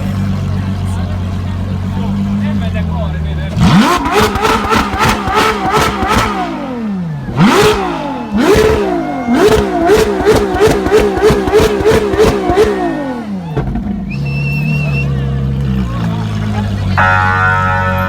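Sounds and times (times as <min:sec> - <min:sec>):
car engine revving: 0:00.0 - 0:17.9.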